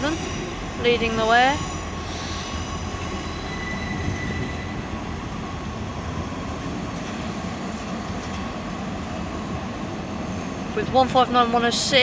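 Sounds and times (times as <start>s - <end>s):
diesel train engine drone: 0.0s - 12.0s.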